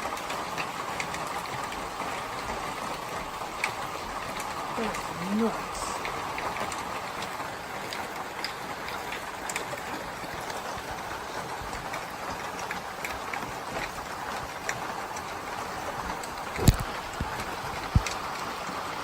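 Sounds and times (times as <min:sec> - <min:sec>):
raindrops clicking close by: 0:00.0 - 0:19.0
steady rain hiss: 0:00.0 - 0:19.0.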